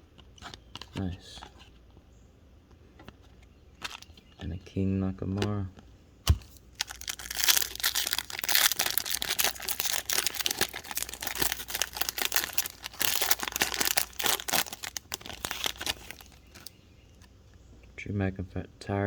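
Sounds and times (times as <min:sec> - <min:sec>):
foil wrapper tearing and crinkling: 0:06.3 - 0:16.7.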